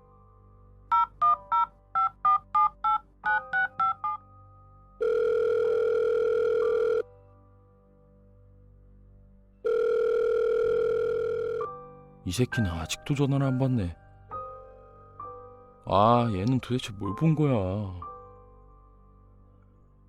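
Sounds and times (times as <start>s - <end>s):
faint background music: 0.0s - 20.0s
phone keypad beeps: 0.9s - 4.2s
phone ringing tone: 5.0s - 7.1s, 9.6s - 11.8s.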